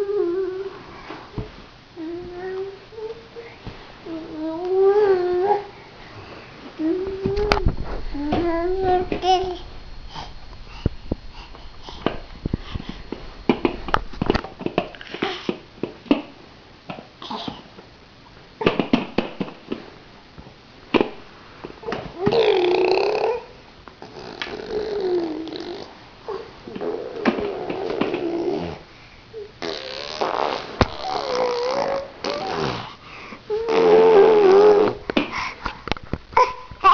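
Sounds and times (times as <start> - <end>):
baby vocalising: 22.2 - 28.8, 29.6 - 32.9, 33.5 - 35.0.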